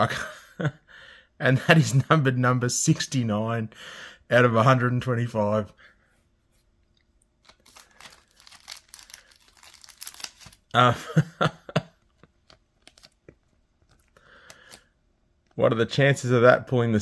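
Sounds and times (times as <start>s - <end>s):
plastic packaging crinkling: 7.3s - 10.8s, 12.2s - 14.8s.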